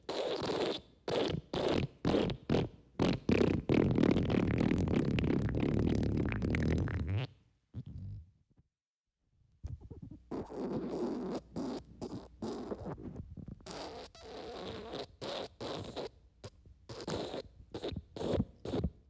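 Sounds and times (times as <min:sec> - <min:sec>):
wet farts: 0:00.1 - 0:08.3, 0:09.8 - 0:16.1, 0:16.9 - 0:18.9.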